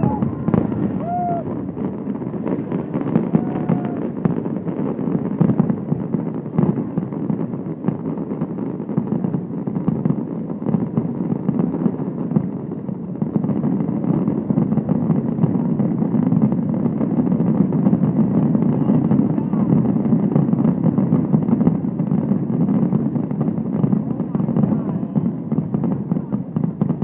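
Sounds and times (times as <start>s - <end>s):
fireworks booming: 0.0s - 27.0s
sharp firework bangs: 0.0s - 27.0s.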